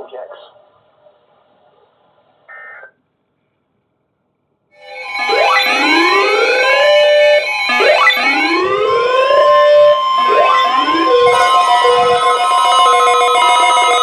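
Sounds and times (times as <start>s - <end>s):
beeping alert tones: 4.8s - 14.0s
siren-style alarm wails: 4.8s - 14.0s
strong steady alert tone: 4.8s - 14.0s.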